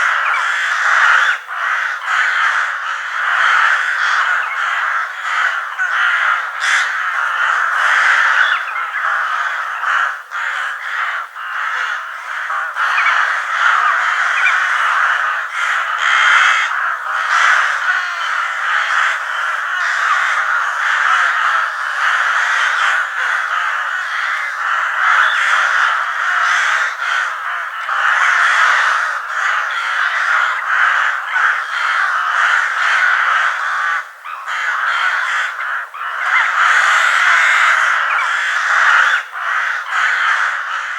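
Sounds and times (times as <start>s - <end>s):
flock of crows cawing: 0.0s - 40.9s.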